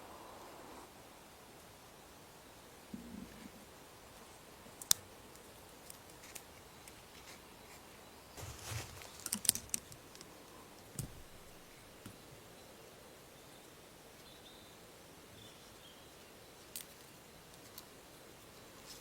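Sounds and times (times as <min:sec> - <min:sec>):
faint hiss: 0:00.0 - 0:19.0
sharp clicks and light knocks: 0:08.8 - 0:12.2.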